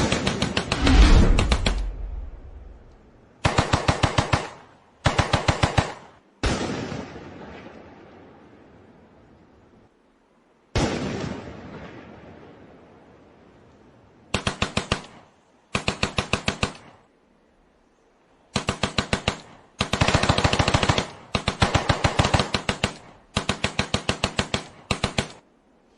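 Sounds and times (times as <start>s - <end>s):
explosion: 0.8s - 3.0s
machine-gun bursts: 18.6s - 25.4s.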